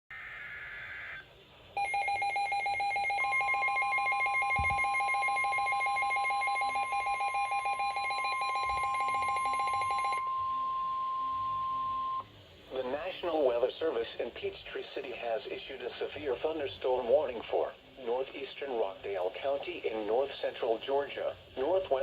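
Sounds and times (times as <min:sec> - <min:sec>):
steady warning alarm tone: 0:01.8 - 0:12.3.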